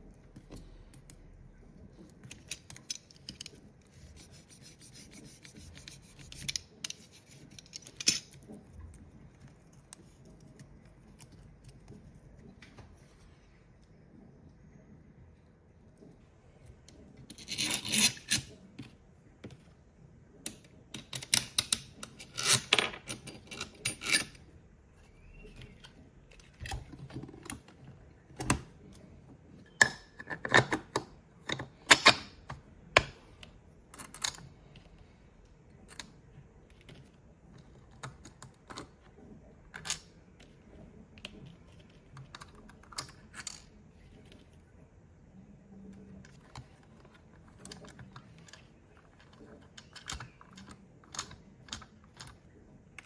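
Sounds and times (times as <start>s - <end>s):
small metal parts clinking: 5.8s - 8.4s, 21.0s - 24.4s.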